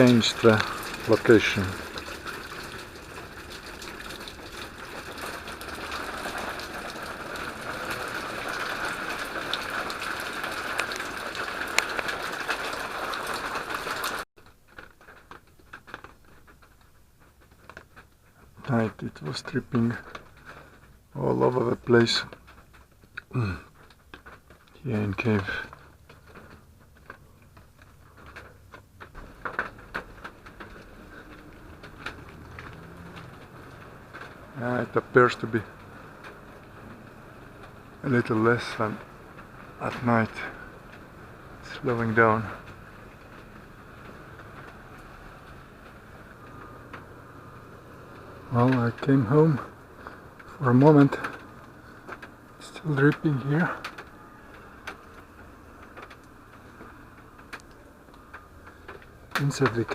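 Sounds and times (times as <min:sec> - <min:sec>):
small waterfall running: 0:00.0 - 0:14.2.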